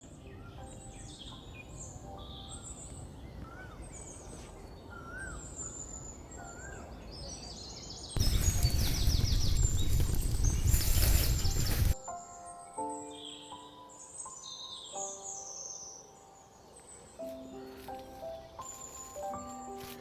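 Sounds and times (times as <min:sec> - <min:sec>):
birds chirping and whistling: 0:00.2 - 0:12.0.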